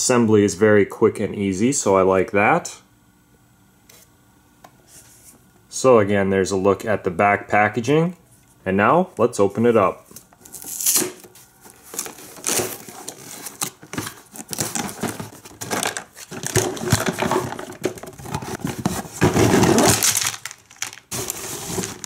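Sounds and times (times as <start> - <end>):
cardboard and plastic crinkling: 10.4 - 22.0.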